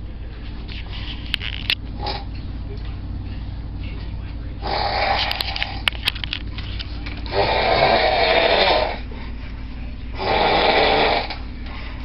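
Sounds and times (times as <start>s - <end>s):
man snoring: 4.6s - 5.3s, 7.3s - 9.0s, 10.2s - 11.4s.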